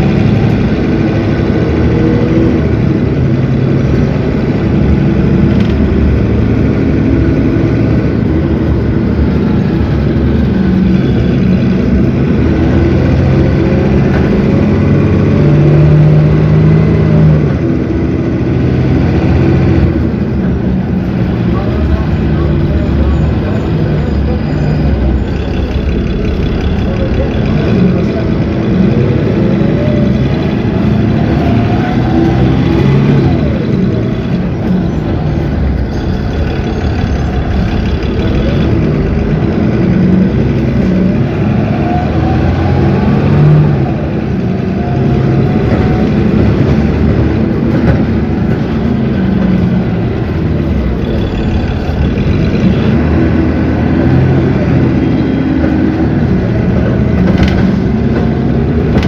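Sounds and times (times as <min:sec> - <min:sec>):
diesel bus engine running: 0:00.0 - 0:59.0
engine whine rising: 0:22.4 - 0:59.0.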